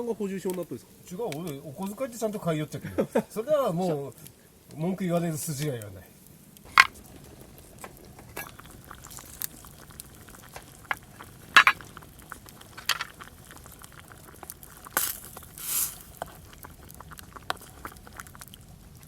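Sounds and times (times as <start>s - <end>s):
cookware and utensils clinking: 8.2s - 8.7s, 11.6s - 11.8s, 12.8s - 13.1s.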